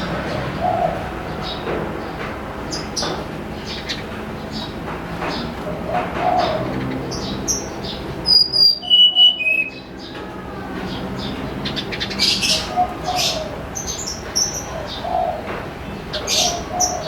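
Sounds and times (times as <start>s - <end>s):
songbird chirping and whistling: 8.3s - 9.9s.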